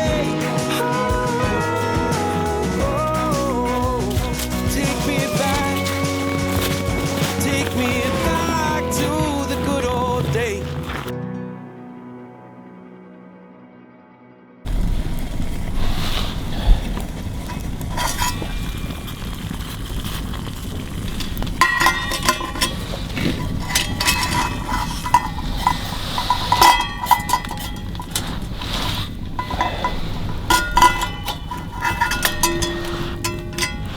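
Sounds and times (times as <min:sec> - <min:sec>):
light metallic clinks and knocks: 0:14.7 - 0:33.9
steady low rumble: 0:14.7 - 0:33.9.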